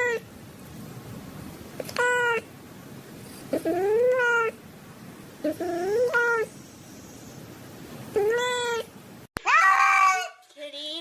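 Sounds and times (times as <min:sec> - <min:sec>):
cat meowing: 0:00.0 - 0:00.3, 0:01.9 - 0:02.5, 0:03.5 - 0:04.6, 0:05.4 - 0:06.5, 0:08.2 - 0:08.9.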